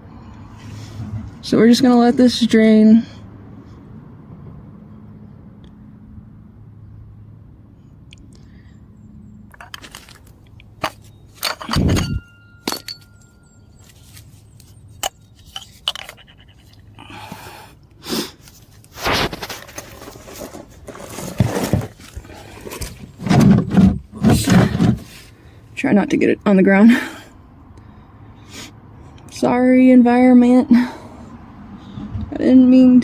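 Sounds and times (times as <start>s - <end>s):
tools clinking and scraping: 9.5s - 17.0s
thin ringing tone: 11.0s - 16.6s.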